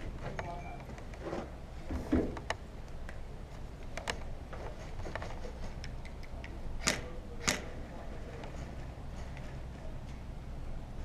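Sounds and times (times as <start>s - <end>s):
sharp clicks and knocks: 3.8s - 7.8s.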